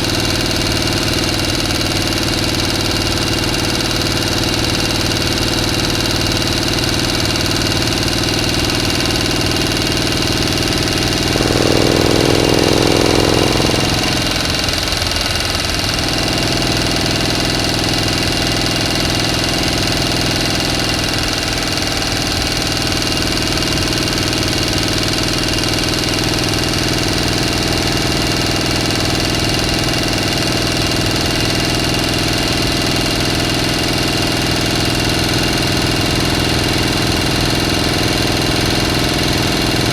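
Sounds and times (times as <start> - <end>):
motor running: 8.9 - 15.5.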